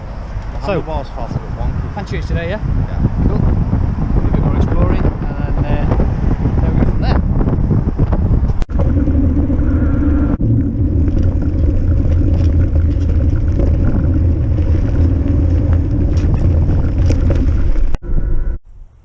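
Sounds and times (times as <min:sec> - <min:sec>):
e-bike rumble and hum: 0:00.0 - 0:19.0
wind on microphone: 0:00.0 - 0:19.0
tyre noise: 0:07.2 - 0:18.0.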